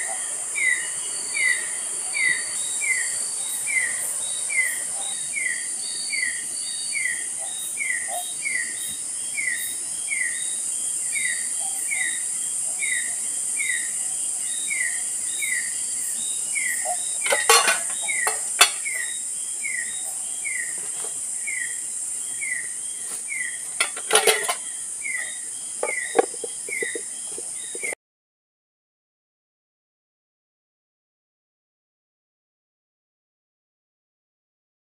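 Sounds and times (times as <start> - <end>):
high-pitched insect drone: 0.0 - 28.0
cookware clattering: 17.2 - 19.0, 23.7 - 24.6, 25.8 - 28.0.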